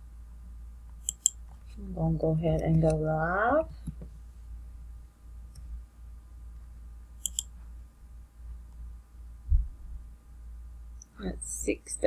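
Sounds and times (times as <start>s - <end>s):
steady low hum: 0.0s - 12.0s
computer mouse clicking: 0.9s - 1.4s, 7.2s - 7.5s.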